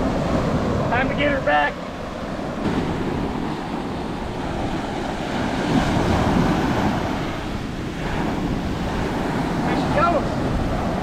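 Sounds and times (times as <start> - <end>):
surf washing up beach: 0.0 - 11.0
wind buffeting microphone: 0.0 - 11.0.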